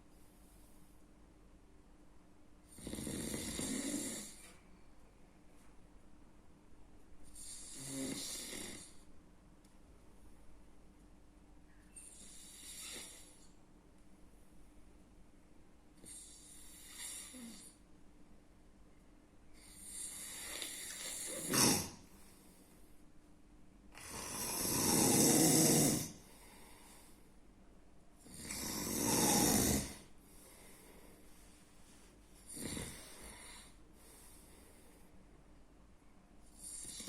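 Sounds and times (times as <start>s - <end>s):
person snoring: 2.7s - 4.5s, 7.4s - 9.0s, 12.1s - 13.4s, 16.0s - 17.8s, 19.6s - 22.1s, 24.0s - 26.4s, 28.2s - 30.2s, 32.5s - 33.8s, 36.6s - 37.0s.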